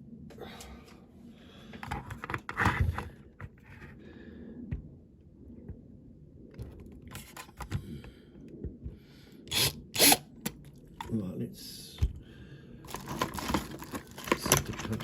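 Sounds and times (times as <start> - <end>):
model car and tools handled: 1.8 - 4.0, 6.6 - 7.8, 12.9 - 15.0.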